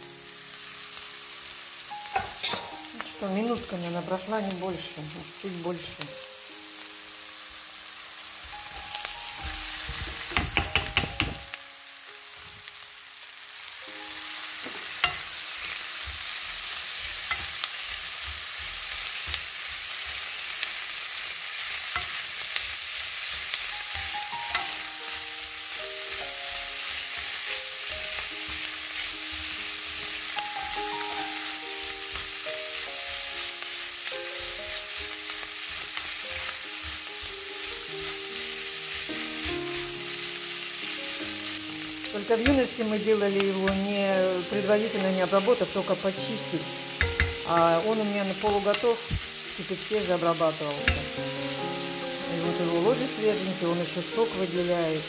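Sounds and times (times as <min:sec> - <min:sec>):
food sizzling in a pan: 0:00.0 - 0:55.0
utensil knocking against pan: 0:10.0 - 0:11.5, 0:47.0 - 0:47.6.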